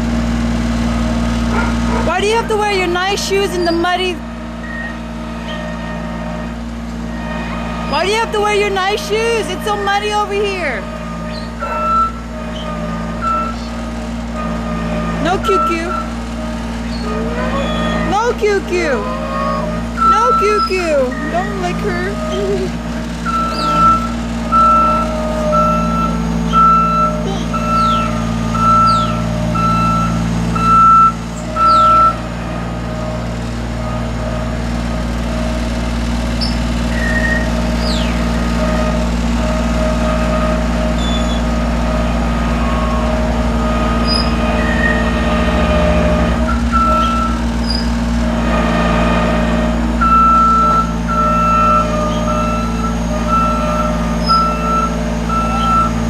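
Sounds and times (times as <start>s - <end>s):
loader engine running: 0.0s - 56.0s
backup alarm beeping: 2.2s - 6.2s, 7.8s - 16.3s, 17.6s - 32.4s, 42.6s - 56.0s.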